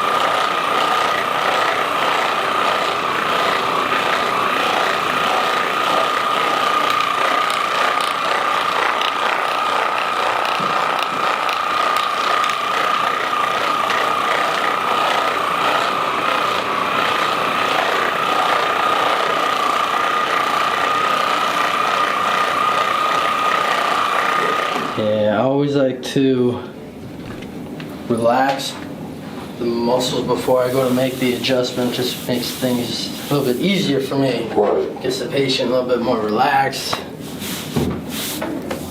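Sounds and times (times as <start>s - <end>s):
massage gun whining and rattling: 0.0s - 25.1s.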